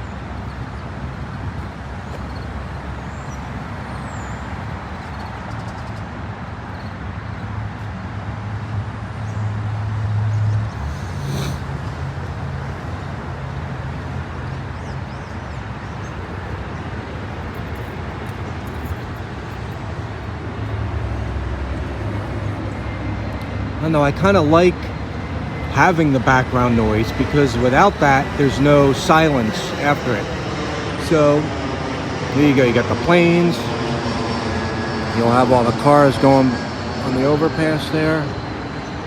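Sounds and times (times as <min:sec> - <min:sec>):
rush of cars: 0:00.0 - 0:14.8, 0:15.4 - 0:39.0
low engine drone: 0:10.3 - 0:12.2, 0:19.2 - 0:38.6.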